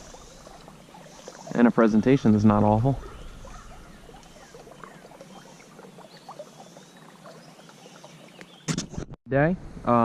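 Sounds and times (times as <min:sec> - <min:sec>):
stream water trickling: 0:00.0 - 0:08.7
bird chirps: 0:03.0 - 0:08.7.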